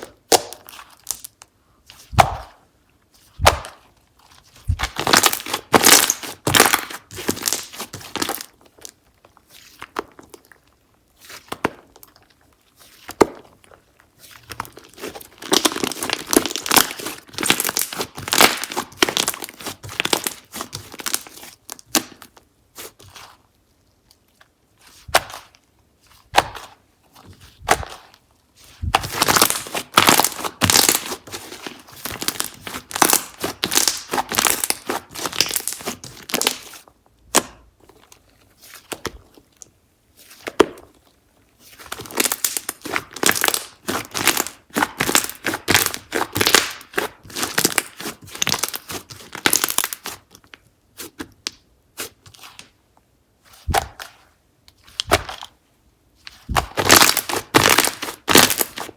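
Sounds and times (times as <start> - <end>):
slime crackling and crunching: 0.0 - 2.6, 3.2 - 39.6, 40.3 - 52.7, 56.2 - 58.9.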